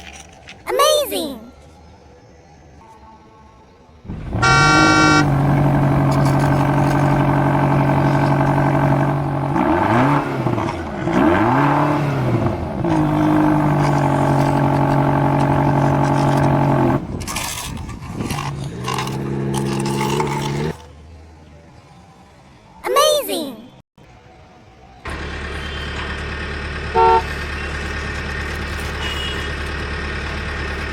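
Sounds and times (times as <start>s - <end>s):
electronic toy engine hum: 4.1s - 10.2s, 25.1s - 30.9s
toy horn beep: 4.4s - 8.3s, 26.9s - 27.7s, 28.9s - 29.6s.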